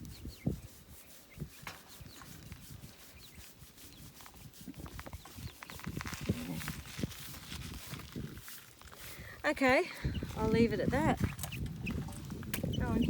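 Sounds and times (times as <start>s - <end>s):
hand rubbing a horse's coat: 0.0s - 13.0s.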